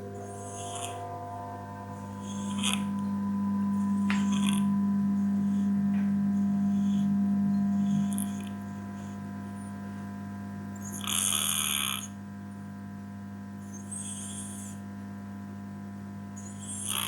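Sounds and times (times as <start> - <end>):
cat snoring: 0.0 - 9.7, 10.8 - 12.2, 13.6 - 14.8, 16.4 - 17.0
steady low hum: 0.0 - 16.6.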